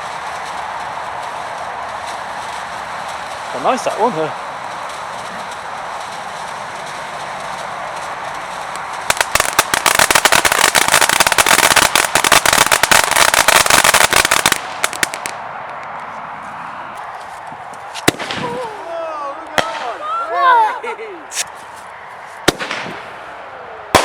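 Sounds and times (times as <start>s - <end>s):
firework fountain hissing: 0.0s - 15.9s, 17.2s - 24.0s
sharp firework crack: 0.0s - 15.9s, 17.8s - 20.6s, 21.3s - 24.0s
firework crackling: 0.0s - 24.0s.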